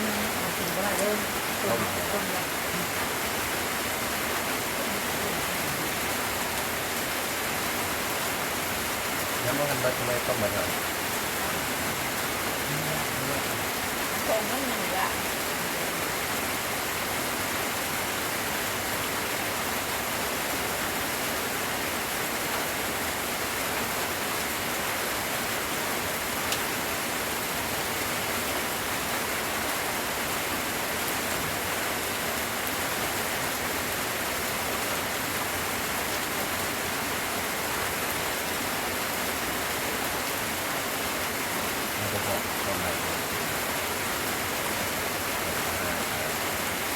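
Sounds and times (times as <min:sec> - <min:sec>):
steady rain falling: 0:00.0 - 0:46.9.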